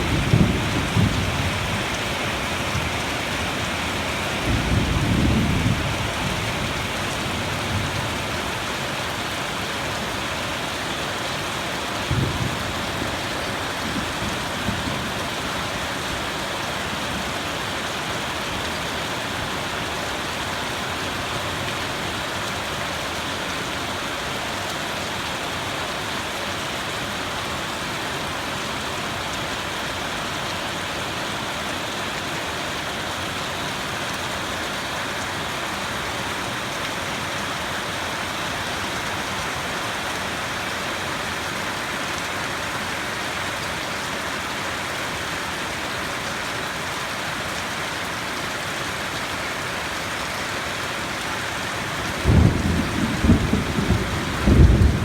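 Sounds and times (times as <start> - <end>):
loud low thunder rumble: 0.0 - 1.9, 52.2 - 55.0
steady rain falling: 0.0 - 55.0.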